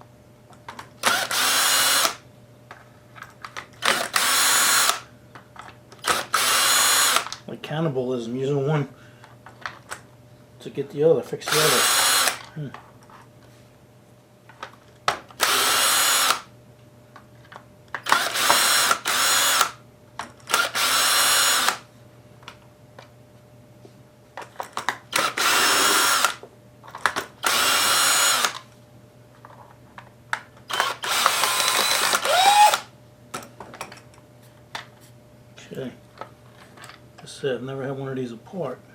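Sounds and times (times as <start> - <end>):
cordless screw gun motor whining: 1.0 - 2.2, 3.8 - 5.0, 6.0 - 7.4, 11.5 - 12.5, 15.4 - 16.5, 18.0 - 19.8, 20.5 - 21.8, 25.1 - 26.4, 27.4 - 28.6, 30.7 - 32.9.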